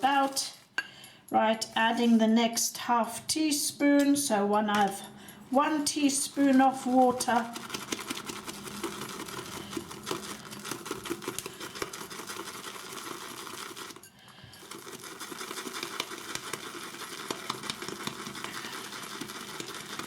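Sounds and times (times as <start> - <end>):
shaving brush whisking lather: 0.0 - 0.7, 5.5 - 20.0.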